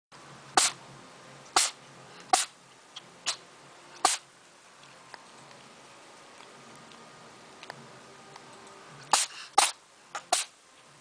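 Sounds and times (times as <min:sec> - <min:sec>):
cat sneezing: 0:00.6 - 0:00.8, 0:01.6 - 0:02.6, 0:03.2 - 0:03.4, 0:04.0 - 0:04.3, 0:09.1 - 0:10.6.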